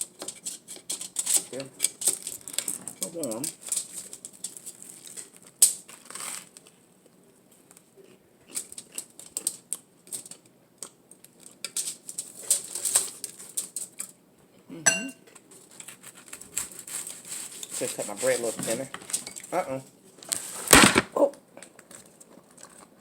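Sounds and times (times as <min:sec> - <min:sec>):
crunchy chewing: 0:00.0 - 0:14.1
person humming mm: 0:14.6 - 0:15.0.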